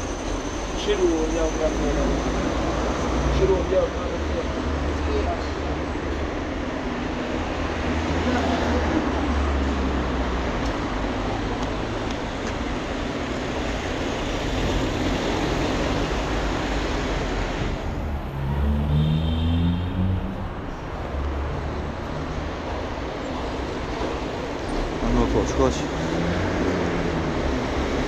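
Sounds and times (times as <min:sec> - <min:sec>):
passing vehicles rushing: 0:00.0 - 0:28.0
vehicle engine pulling away: 0:15.5 - 0:20.6.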